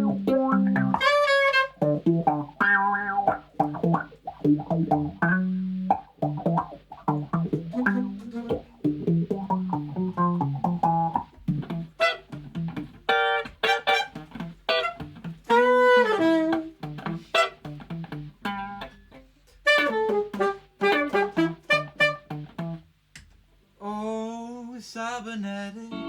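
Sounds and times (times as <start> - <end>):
plucked acoustic guitar: 0.0 - 1.2, 1.8 - 15.5
saxophone: 0.0 - 17.9, 19.6 - 22.7.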